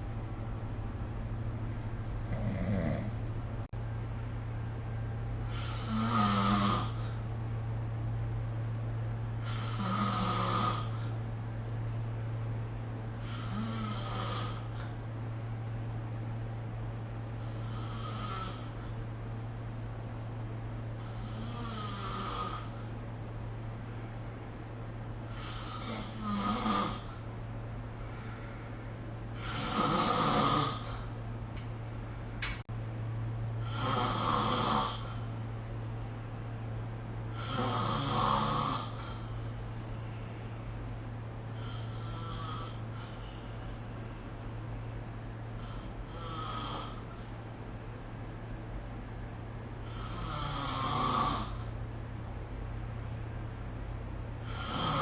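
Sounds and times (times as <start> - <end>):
steady low hum: 0.0 - 55.0
person snoring: 1.8 - 3.2, 5.5 - 7.2, 9.4 - 11.2, 13.2 - 14.9, 17.4 - 18.9, 21.0 - 22.9, 25.3 - 27.2, 29.4 - 31.2, 33.6 - 35.3, 37.3 - 39.4, 41.6 - 43.3, 45.6 - 47.3, 49.8 - 51.8, 54.4 - 55.0.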